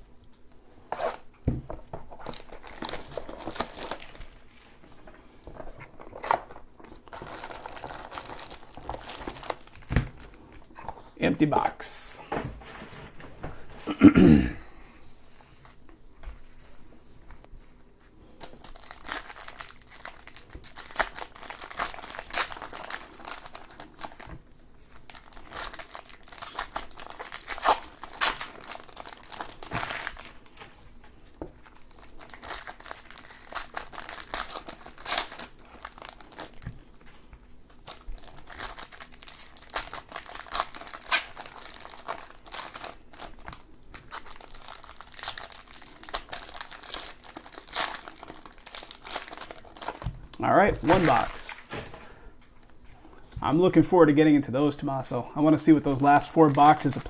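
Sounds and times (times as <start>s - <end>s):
foil wrappers tearing and crinkling: 2.1s - 4.5s, 6.0s - 10.4s, 18.4s - 30.8s, 31.6s - 50.2s, 50.8s - 51.6s, 55.9s - 57.0s.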